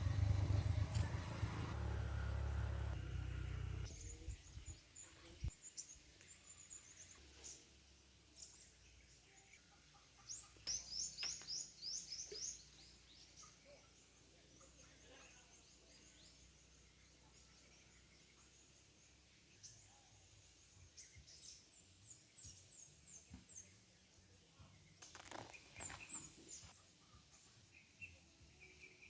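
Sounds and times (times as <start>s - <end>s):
low rumble: 0.0s - 3.9s
birds chirping: 0.0s - 23.8s.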